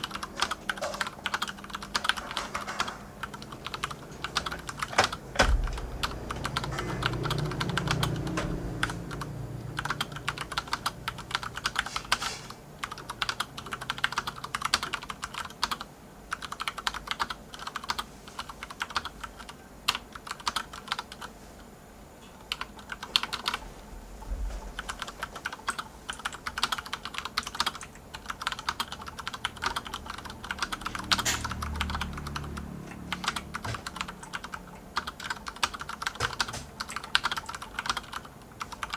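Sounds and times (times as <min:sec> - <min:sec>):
mechanical keyboard typing: 0:00.0 - 0:21.3, 0:22.4 - 0:23.6, 0:24.8 - 0:38.9
low rumble: 0:05.3 - 0:11.3.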